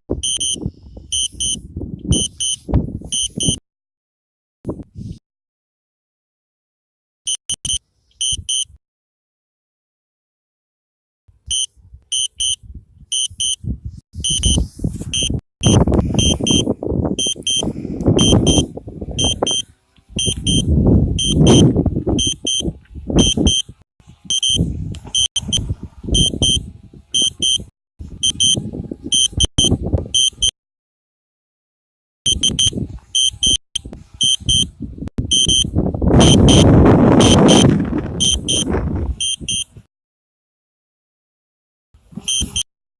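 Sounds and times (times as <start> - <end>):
wind buffeting microphone: 0.1 - 3.6, 4.7 - 5.2, 11.8 - 30.4, 32.3 - 39.9
high electronic beeps: 0.2 - 3.6, 11.5 - 12.6, 13.2 - 13.6, 14.2 - 19.6, 20.2 - 23.7, 24.3 - 24.6, 27.2 - 27.6, 28.2 - 30.5, 32.3 - 33.6, 34.2 - 34.7, 35.3 - 39.7.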